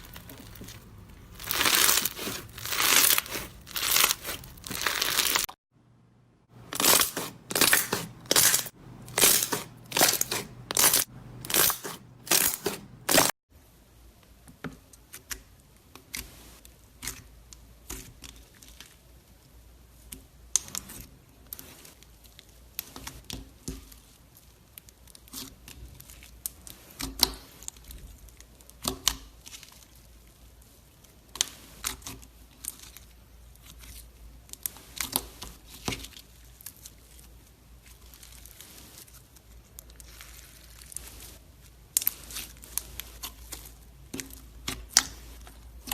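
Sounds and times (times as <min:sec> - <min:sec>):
slime crackling when squeezed: 0:00.0 - 0:05.6, 0:06.7 - 0:13.3.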